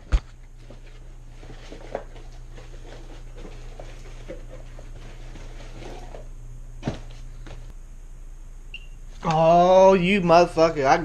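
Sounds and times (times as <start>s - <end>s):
objects rustling and knocking: 0.0s - 7.7s
steady low hum: 0.0s - 11.0s.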